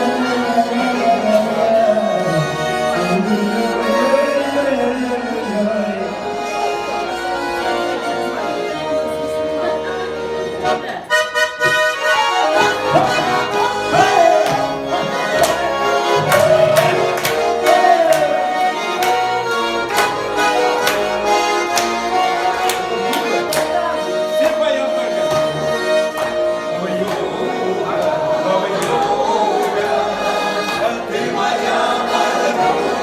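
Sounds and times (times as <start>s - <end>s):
button accordion folk tune: 0.0s - 33.0s
sharp rhythmic beats: 10.6s - 33.0s.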